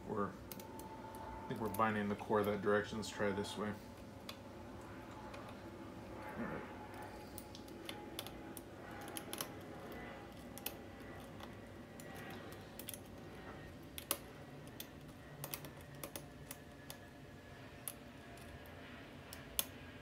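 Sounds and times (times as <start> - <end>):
lock pick clicking pins: 13.8 - 17.1.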